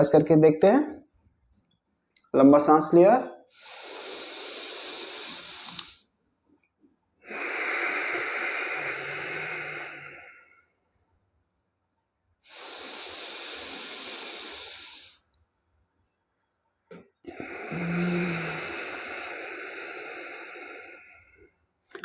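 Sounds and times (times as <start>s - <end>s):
person breathing deeply: 3.5s - 6.0s, 7.2s - 10.8s, 12.5s - 15.2s, 17.3s - 21.6s
sharp clicks: 5.6s - 6.0s.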